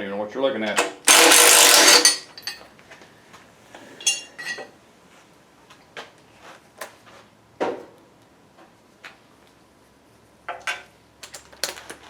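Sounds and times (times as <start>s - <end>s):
metal tools clinking: 1.1s - 2.7s, 4.0s - 4.7s.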